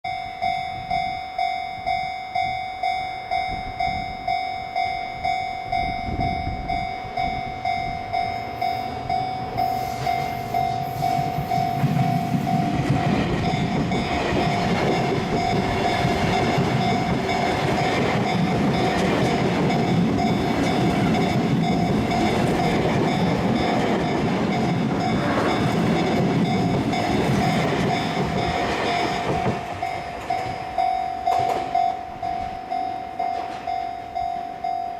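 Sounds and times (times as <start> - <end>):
level-crossing warning bell: 0.0 - 34.9
train wheel rumble: 3.3 - 34.9
rail-joint clatter: 8.2 - 34.4.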